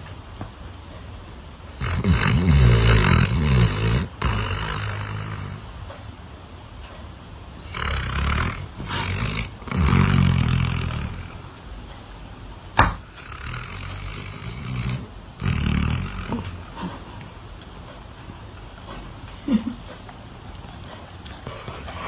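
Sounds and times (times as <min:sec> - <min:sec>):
dog snoring: 0:01.7 - 0:06.4, 0:07.6 - 0:11.7, 0:12.8 - 0:17.4, 0:20.5 - 0:22.0.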